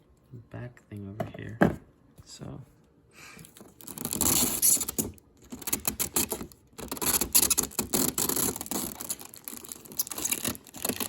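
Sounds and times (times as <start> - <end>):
packaging crinkling and crackling: 3.5 - 11.0.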